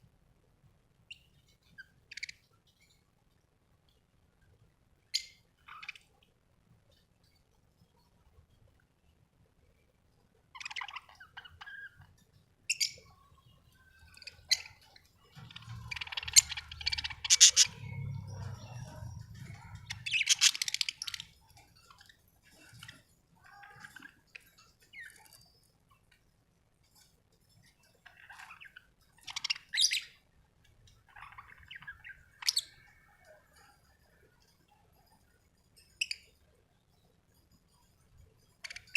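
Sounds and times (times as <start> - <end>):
budgerigars chirping and warbling: 5.2 - 6.1, 10.6 - 12.1, 12.7 - 13.2, 14.0 - 24.2, 28.0 - 30.2, 31.0 - 33.7, 38.6 - 38.9.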